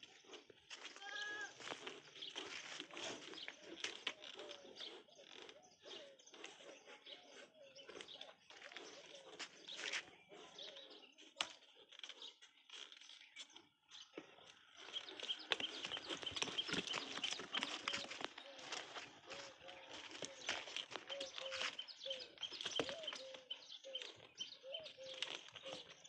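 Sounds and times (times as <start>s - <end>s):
scuffing and rustling clicks: 15.0s - 24.2s.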